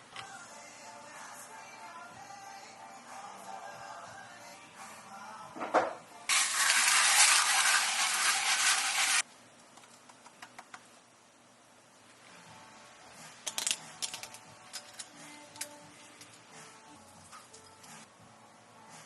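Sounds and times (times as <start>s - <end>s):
loud steady hiss: 6.3s - 9.3s.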